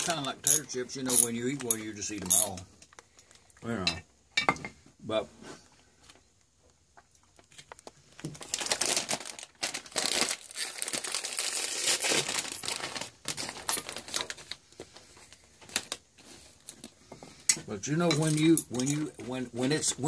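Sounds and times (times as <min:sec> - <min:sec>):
plastic package crinkling: 0:07.4 - 0:16.9.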